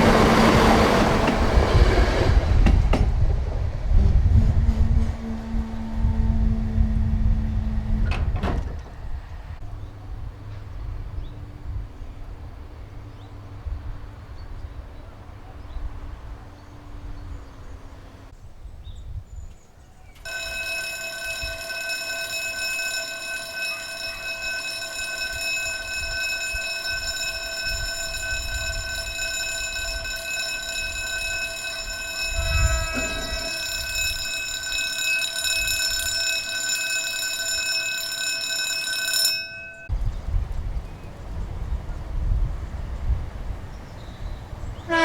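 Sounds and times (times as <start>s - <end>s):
level crossing warning alarm: 20.3s - 39.9s.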